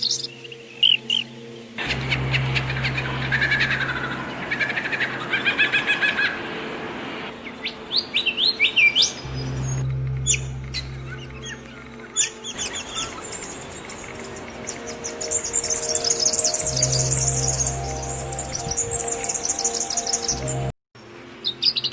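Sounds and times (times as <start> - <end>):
songbird trills: 0.0 - 6.4, 7.4 - 20.7
sweeping whistled bird notes: 0.0 - 6.5, 7.3 - 20.7
steady low hum: 1.8 - 5.4, 9.2 - 19.4.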